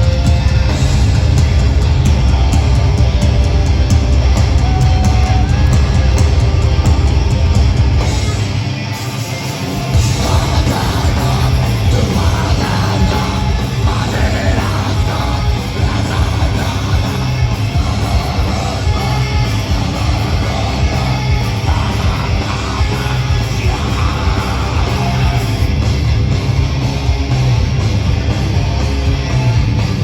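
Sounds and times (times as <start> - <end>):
metal band playing live: 0.0 - 30.0
yelled vocals: 0.0 - 30.0.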